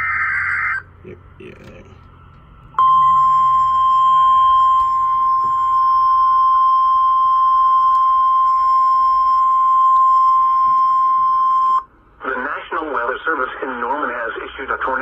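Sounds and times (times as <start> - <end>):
loud steady alarm tone: 2.8 - 11.9.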